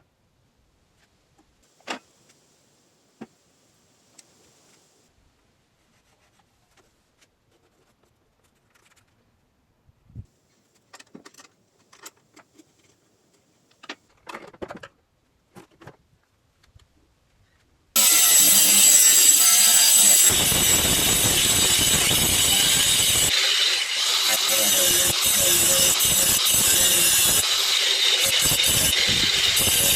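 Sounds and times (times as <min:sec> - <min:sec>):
electric saw cutting wood: 0:18.0 - 0:29.9.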